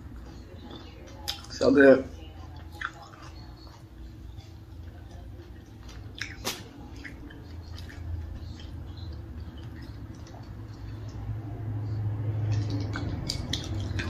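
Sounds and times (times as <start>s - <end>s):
low steady hum: 0.0s - 14.0s
chewing and wet mouth clicks: 0.1s - 1.6s, 2.4s - 14.0s.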